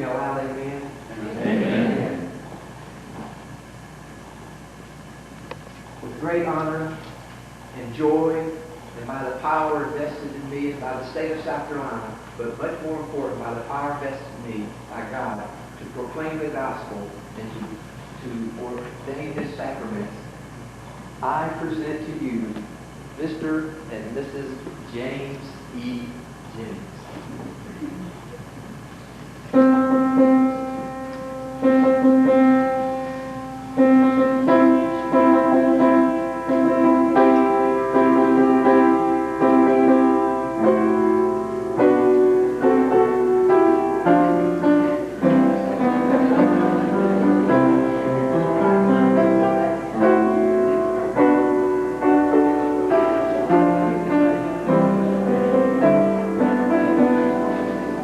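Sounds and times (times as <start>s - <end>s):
slow piano chords: 21.5s - 58.0s.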